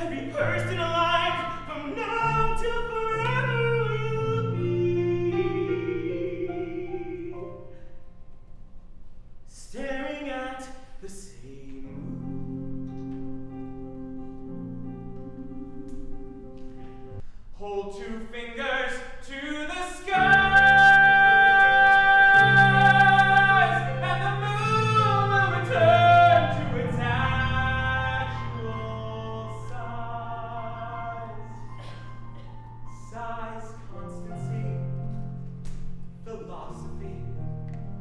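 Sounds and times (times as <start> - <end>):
voices singing in harmony: 20.1 - 32.0.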